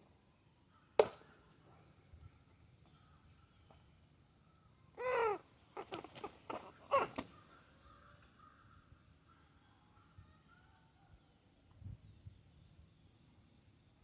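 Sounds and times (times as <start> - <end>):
rooster croaking squawk: 5.0 - 7.2.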